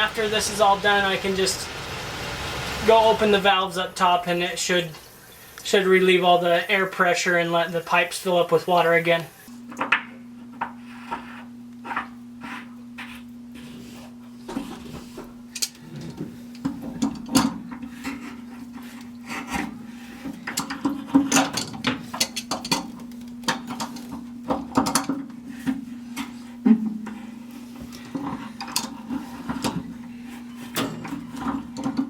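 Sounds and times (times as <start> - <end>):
tools scraping and clicking on fittings: 14.5 - 32.0.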